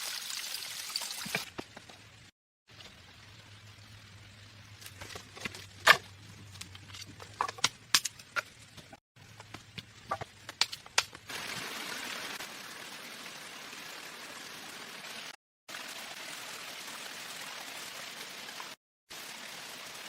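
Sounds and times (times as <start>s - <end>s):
rushing water: 10.9s - 20.0s.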